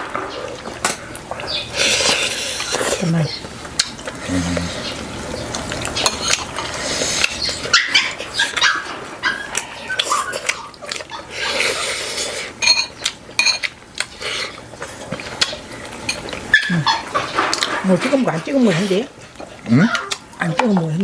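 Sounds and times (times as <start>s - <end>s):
dishes and utensils clinking: 5.7s - 6.8s, 12.6s - 13.7s, 16.0s - 18.9s
dog barking: 7.7s - 9.5s.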